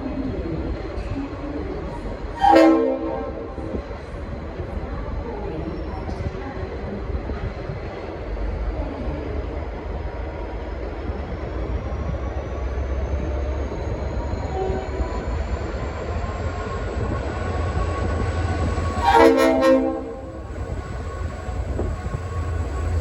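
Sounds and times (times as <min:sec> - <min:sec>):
locomotive air horn chord: 0:02.4 - 0:03.9, 0:19.0 - 0:20.4
diesel locomotive pulling away: 0:10.2 - 0:23.0.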